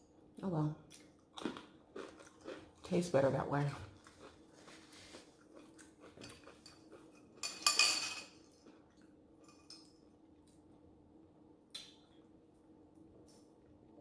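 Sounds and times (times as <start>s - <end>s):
utensil clinking against a dish: 6.2s - 8.4s.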